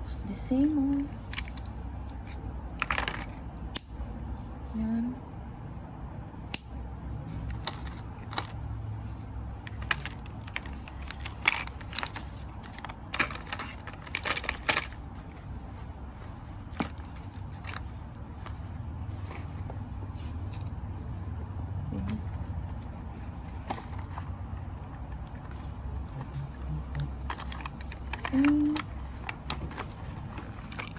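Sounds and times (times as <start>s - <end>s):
low steady hum: 0.0s - 30.9s
crinkling rustle of packaging: 7.3s - 21.3s, 22.2s - 30.9s
cardboard boxes being handled: 9.6s - 21.3s, 22.0s - 30.9s.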